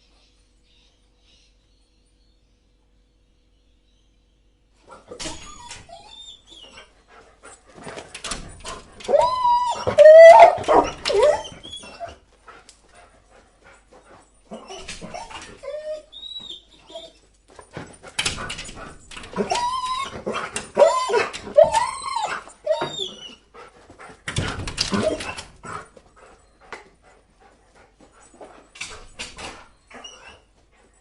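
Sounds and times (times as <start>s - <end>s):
dog whining: 5.0s - 6.9s, 9.0s - 12.2s, 14.5s - 17.3s, 19.3s - 23.6s, 24.9s - 25.8s, 29.4s - 30.5s
paws scrabbling on glass: 12.9s - 31.0s.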